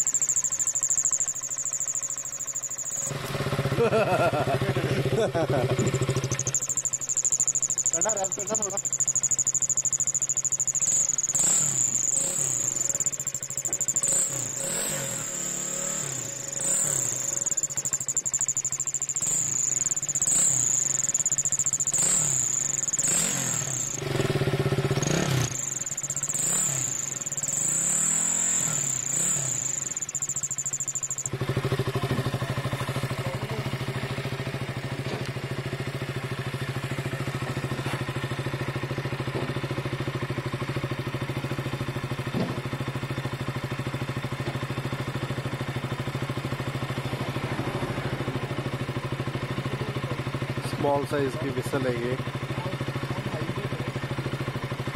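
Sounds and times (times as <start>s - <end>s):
high-pitched exhaust whistle: 0.0s - 39.8s
motorcycle engine revving: 0.0s - 54.9s.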